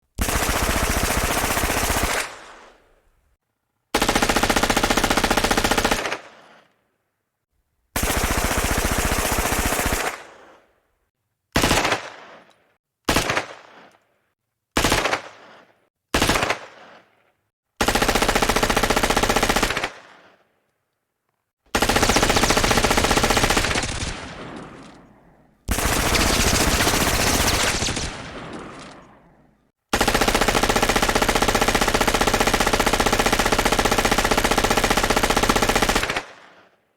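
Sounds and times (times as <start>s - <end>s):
automatic gunfire bursts: 21.7s - 24.9s, 25.7s - 29.2s.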